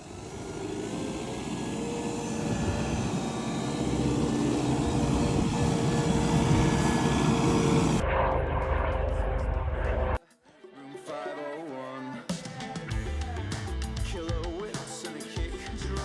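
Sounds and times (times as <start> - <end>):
engine droning: 0.0 - 10.2.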